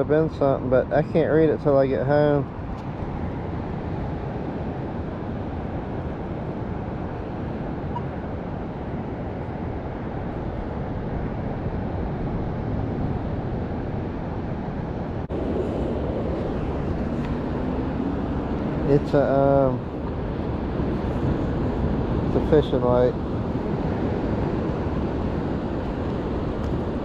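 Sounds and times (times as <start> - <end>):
surf on a beach: 0.0 - 27.0
wind buffeting microphone: 0.0 - 27.0.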